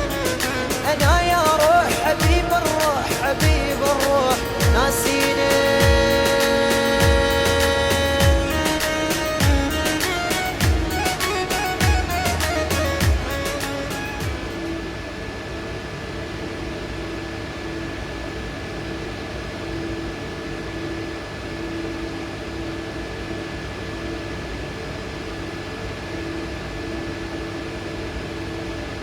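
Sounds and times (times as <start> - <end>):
thin high whine: 0.0 - 19.2
mechanical hum and hiss: 0.0 - 29.0.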